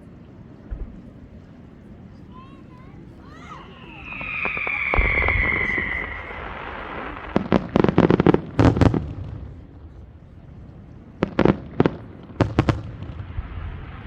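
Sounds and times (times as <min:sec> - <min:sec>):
firework crackling: 0:02.2 - 0:14.0
firework whistle: 0:03.2 - 0:08.0
firework boom: 0:03.7 - 0:09.6.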